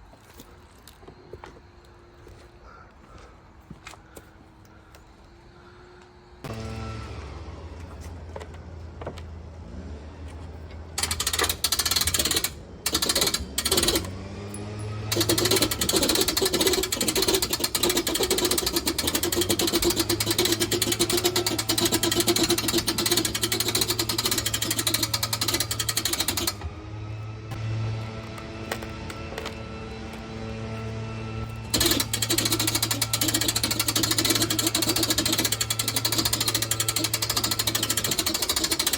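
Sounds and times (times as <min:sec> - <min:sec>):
power saw buzzing: 0:06.4 - 0:38.9.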